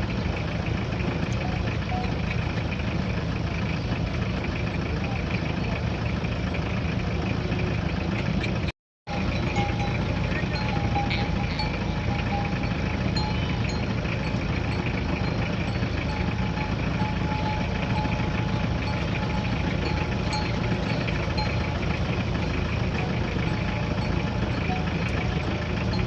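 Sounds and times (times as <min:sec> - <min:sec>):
low engine hum: 0:00.0 - 0:26.0.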